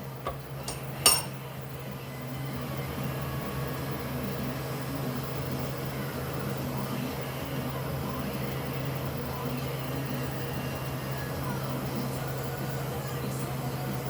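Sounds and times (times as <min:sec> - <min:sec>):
low mechanical hum: 0:00.0 - 0:14.0
sharp metallic clink: 0:00.3 - 0:01.4.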